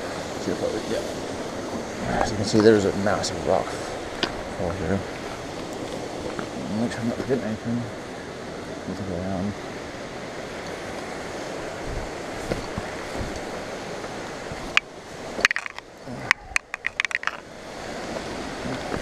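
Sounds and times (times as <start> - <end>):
water rushing from waterfall: 0.0 - 19.0
footsteps on loose rocks: 14.7 - 17.4.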